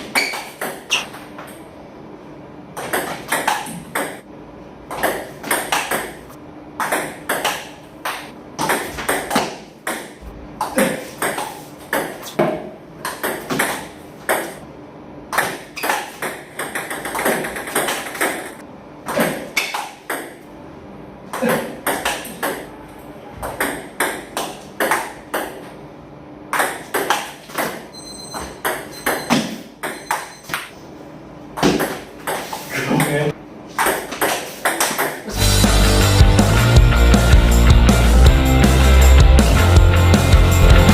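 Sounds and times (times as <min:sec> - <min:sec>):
table tennis balls clicking: 0:02.8 - 0:04.2, 0:04.9 - 0:14.6, 0:15.4 - 0:18.6.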